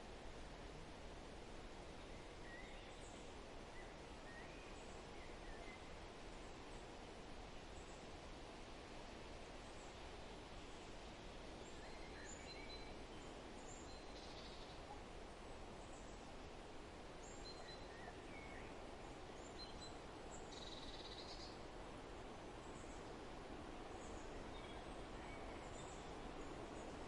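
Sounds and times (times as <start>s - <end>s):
forest wind: 0.0s - 27.0s.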